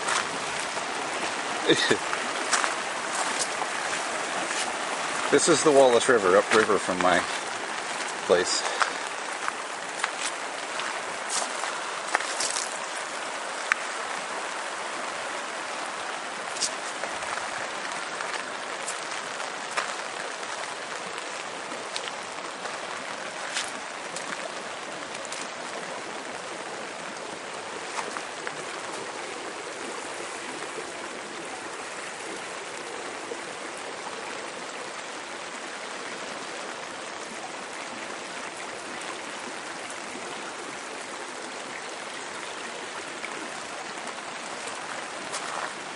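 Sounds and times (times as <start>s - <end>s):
river water rushing: 0.0s - 45.9s.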